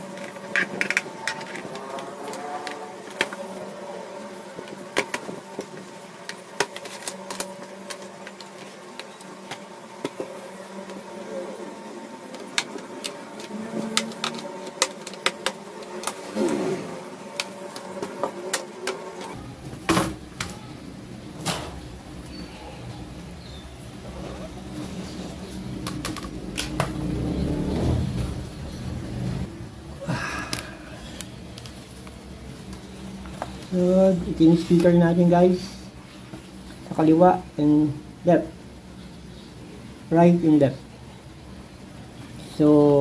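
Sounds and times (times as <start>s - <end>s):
plastic and metal parts clicking: 0.1s - 3.4s, 12.3s - 16.2s.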